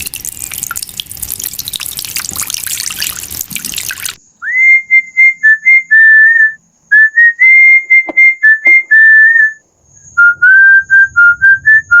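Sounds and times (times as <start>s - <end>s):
person whistling a tune: 4.4s - 12.0s.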